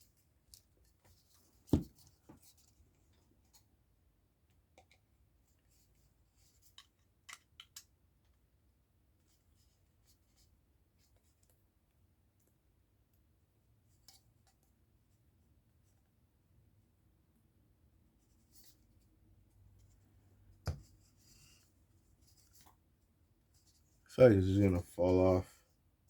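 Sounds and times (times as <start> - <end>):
faint plastic clicks: 6.6 - 8.4.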